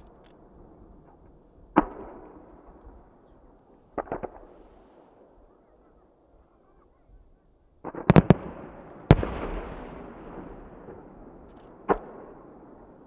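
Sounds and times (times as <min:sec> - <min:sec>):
firework bangs: 0:00.6 - 0:03.0, 0:03.9 - 0:05.2, 0:07.8 - 0:13.0.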